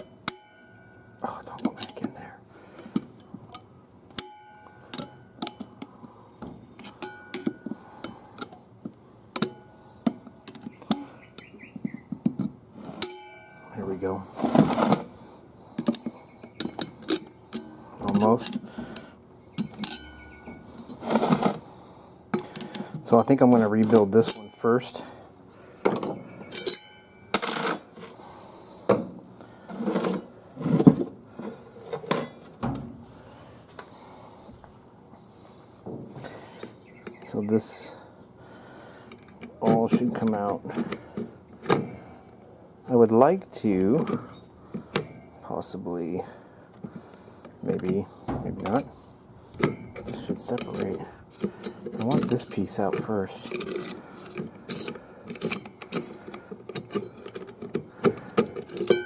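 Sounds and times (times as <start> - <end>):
metallic clicks and clinks: 26.0 - 27.7, 49.6 - 59.0.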